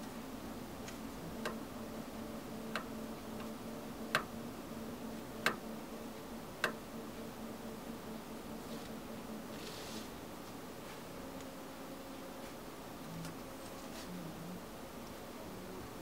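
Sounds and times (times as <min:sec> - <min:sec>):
faint steady hum: 0:00.0 - 0:16.0
sharp clicks: 0:02.7 - 0:04.3, 0:06.6 - 0:06.8.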